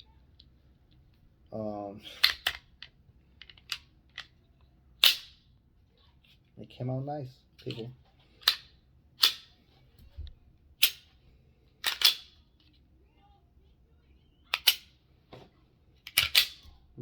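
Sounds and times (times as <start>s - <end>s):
pistol slide metallic clacks: 5.0s - 5.4s, 8.4s - 9.5s, 10.8s - 11.1s, 11.8s - 12.4s.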